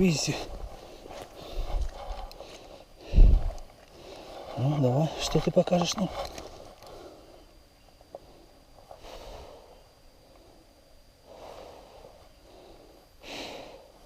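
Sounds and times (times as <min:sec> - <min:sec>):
person breathing: 0:00.5 - 0:04.6, 0:08.2 - 0:14.0.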